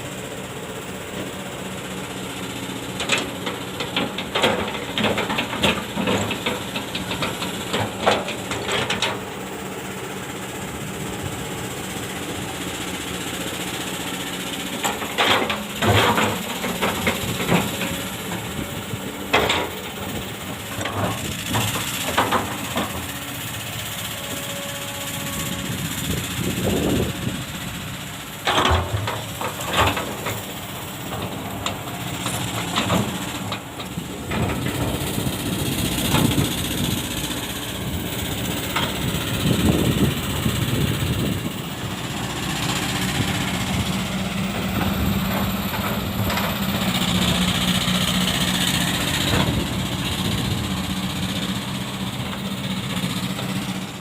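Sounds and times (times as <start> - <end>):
excavator running: 0.0 - 54.0
knocks and clanks from machine: 28.4 - 30.4.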